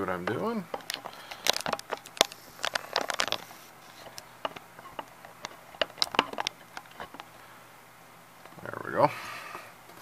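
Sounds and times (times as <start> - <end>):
small hard objects clicking: 0.3 - 7.3.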